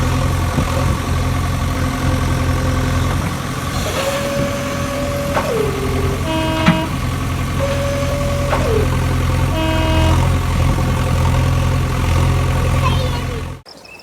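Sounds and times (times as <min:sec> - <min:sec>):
toy engine drone: 0:03.7 - 0:07.0, 0:07.6 - 0:10.2
short horn toot: 0:03.8 - 0:08.9, 0:09.5 - 0:10.4
tone sliding down in pitch: 0:07.6 - 0:10.3.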